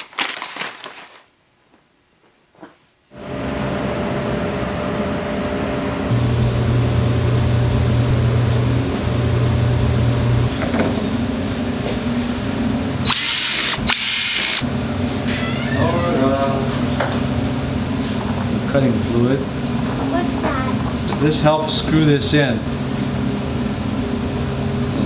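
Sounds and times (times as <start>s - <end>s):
electric drill running: 12.9s - 14.7s.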